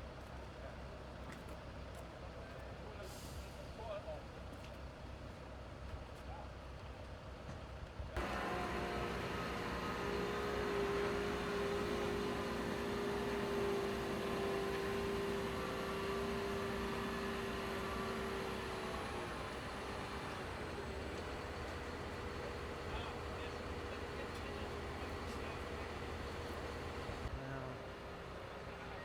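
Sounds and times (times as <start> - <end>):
heavy machine engine droning: 8.2 - 29.0.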